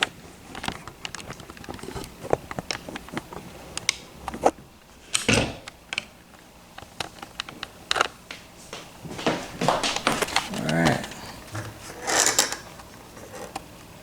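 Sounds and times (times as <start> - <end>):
handling bump: 8.3 - 11.8.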